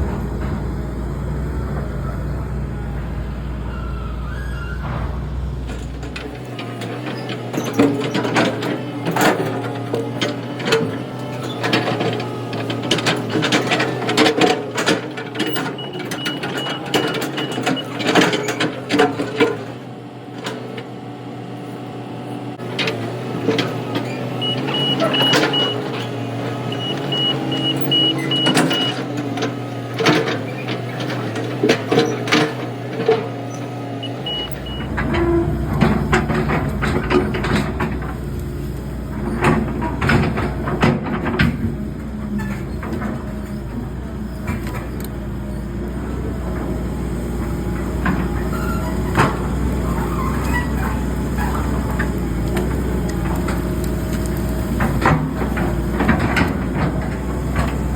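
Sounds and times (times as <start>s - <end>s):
machine engine running: 0.0s - 10.2s, 22.6s - 57.9s
knocks and clanks: 0.0s - 19.7s, 22.7s - 45.2s, 46.1s - 57.9s.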